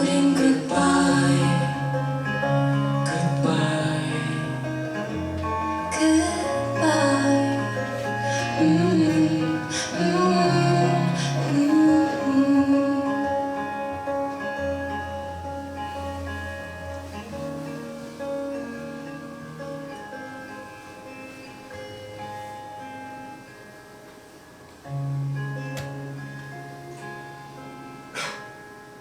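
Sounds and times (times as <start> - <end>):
person singing: 0.0 - 14.2
live band guitar chords: 0.0 - 29.0.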